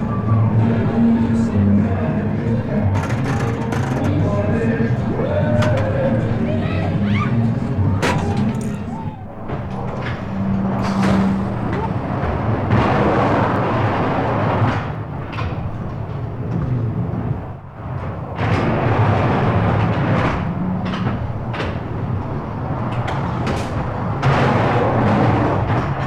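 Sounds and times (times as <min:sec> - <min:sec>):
fairground ride rumbling and clattering: 0:00.0 - 0:26.0
repeated knocks: 0:00.4 - 0:13.5.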